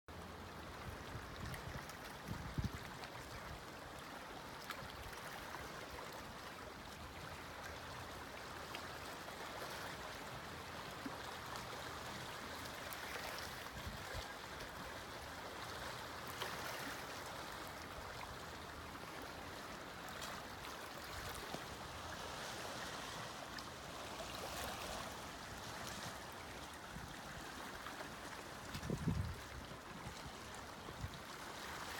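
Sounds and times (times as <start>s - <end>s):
waves washing in: 18.7s - 31.9s.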